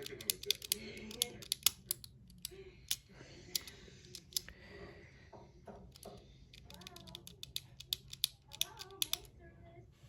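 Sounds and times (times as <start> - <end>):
padlock number wheels clicking: 0.0 - 4.5, 5.9 - 9.3.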